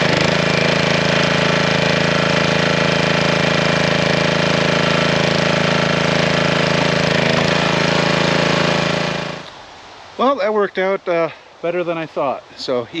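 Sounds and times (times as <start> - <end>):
small engine running steadily: 0.0 - 9.5.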